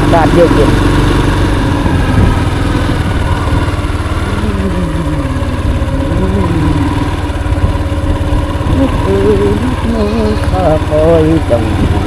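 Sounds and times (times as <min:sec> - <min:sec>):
small motorcycle engine running: 0:00.0 - 0:12.0
wavering tones: 0:01.8 - 0:07.9, 0:08.5 - 0:11.8.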